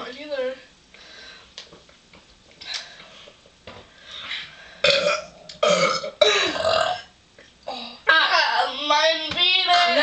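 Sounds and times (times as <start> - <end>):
loud burps: 4.8 - 7.2.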